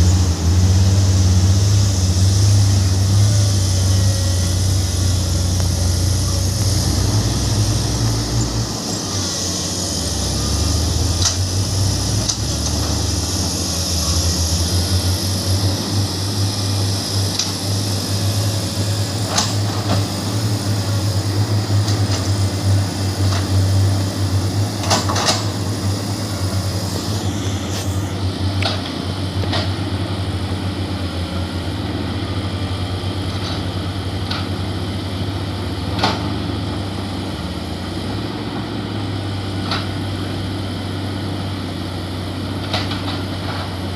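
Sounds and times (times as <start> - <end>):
diesel engine running: 0.0 - 43.9.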